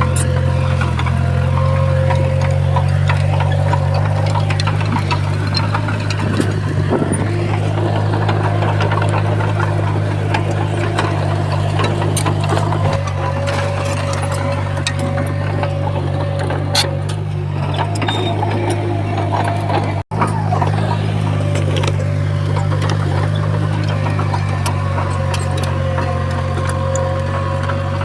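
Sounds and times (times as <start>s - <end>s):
heavy machine engine droning: 0.0s - 28.0s.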